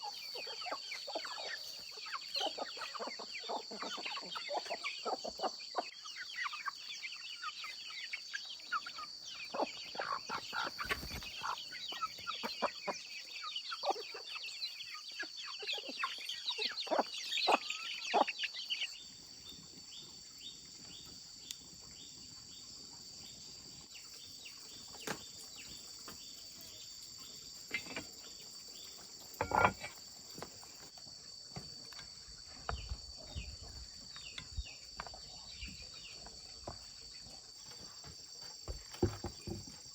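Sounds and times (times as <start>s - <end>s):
chickens clucking: 0.0s - 22.0s, 27.5s - 31.0s.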